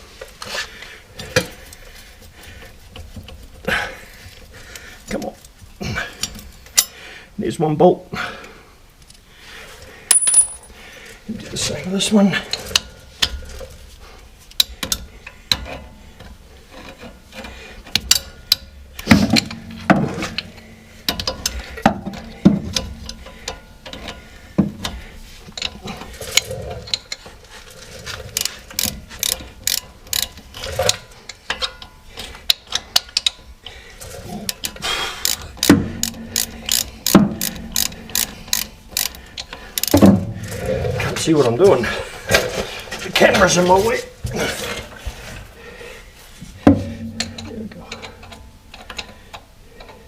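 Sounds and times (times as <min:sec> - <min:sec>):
ratchet wrench clicking: 0:28.3 - 0:31.7, 0:34.6 - 0:40.0
metal knocks: 0:46.6 - 0:47.6.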